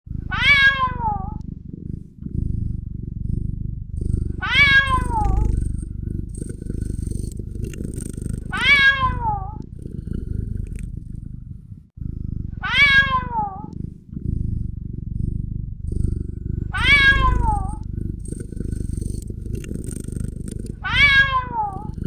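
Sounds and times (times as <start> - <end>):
kitten purring: 0.1 - 22.0
kitten meowing: 8.4 - 9.5, 16.8 - 17.8.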